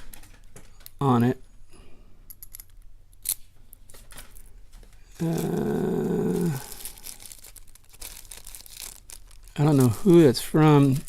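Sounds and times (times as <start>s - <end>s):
wrapping rustling and crinkling: 3.3s - 11.0s
low drawn-out vocal sound: 5.1s - 6.9s.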